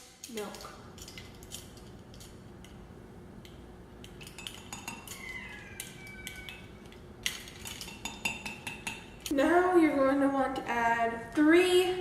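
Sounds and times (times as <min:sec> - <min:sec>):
metal spoon clinking against mug: 0:04.0 - 0:09.1.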